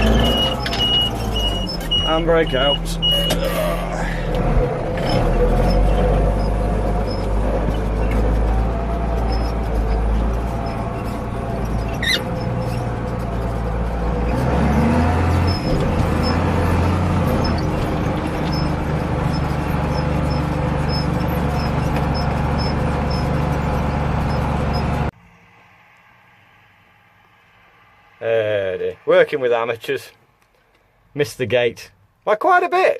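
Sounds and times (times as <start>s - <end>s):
tractor diesel engine running: 0.0s - 25.3s.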